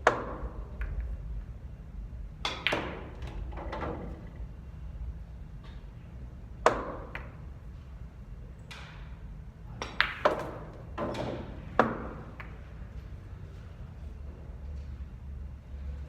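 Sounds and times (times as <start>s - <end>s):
pool balls clacking: 2.4s - 4.4s, 9.8s - 12.6s.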